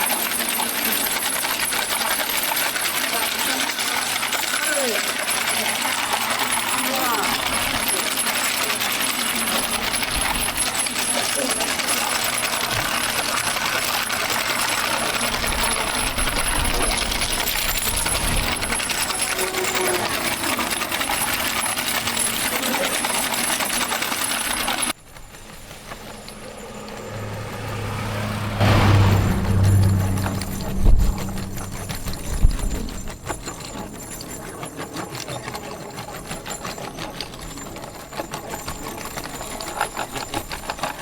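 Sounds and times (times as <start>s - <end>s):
cart wheels rattling on pavement: 0.0s - 41.0s
low hum: 25.3s - 33.4s.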